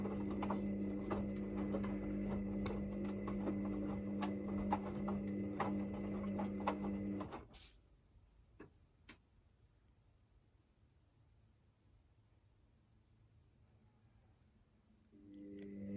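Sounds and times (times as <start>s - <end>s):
washing machine humming and ticking: 0.0s - 7.6s, 15.4s - 15.9s.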